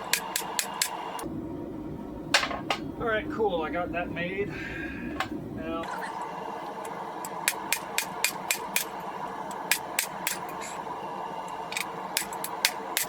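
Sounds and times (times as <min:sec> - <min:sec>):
gas forge burner running: 0:00.0 - 0:13.0.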